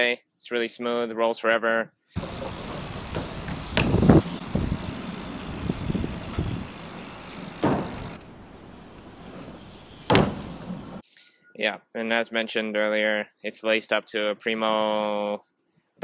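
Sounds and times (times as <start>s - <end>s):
sharp knocks: 2.2s - 4.9s, 7.1s - 8.2s, 10.1s - 11.0s
bike tyres rolling on road: 2.2s - 11.0s.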